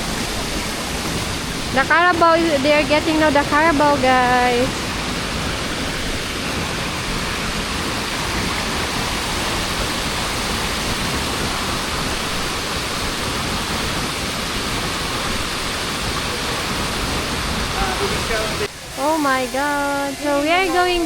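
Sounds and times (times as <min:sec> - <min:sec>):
steady rushing noise: 0:17.3 - 0:21.0.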